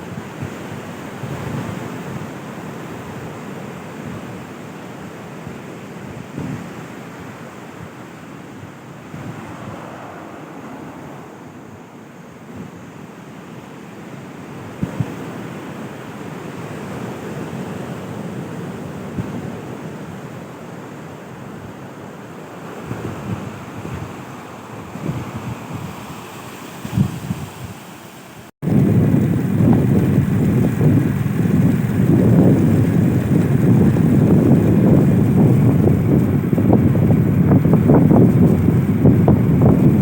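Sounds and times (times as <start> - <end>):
wind buffeting microphone: 0.0 - 4.5, 5.1 - 13.6, 22.6 - 40.0
sea waves washing onto beach: 0.0 - 40.0.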